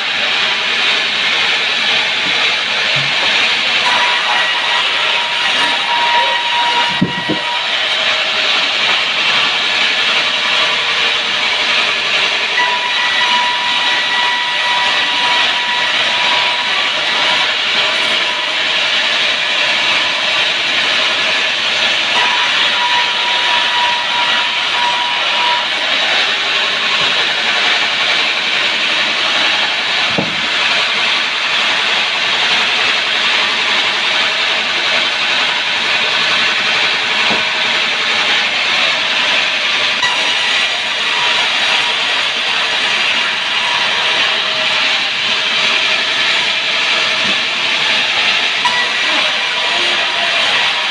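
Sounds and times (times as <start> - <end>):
saw cutting wood: 0.0 - 50.9
thin saw whine: 0.0 - 50.9.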